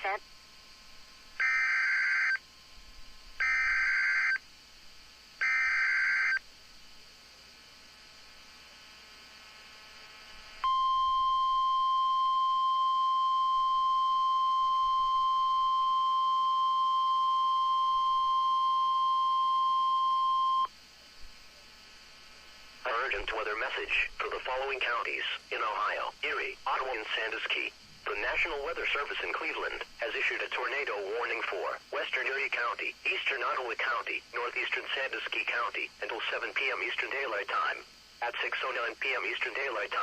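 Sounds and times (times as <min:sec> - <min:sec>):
screechy digital data bursts: 0:03.4 - 0:04.4
steady attention tone: 0:10.6 - 0:20.7.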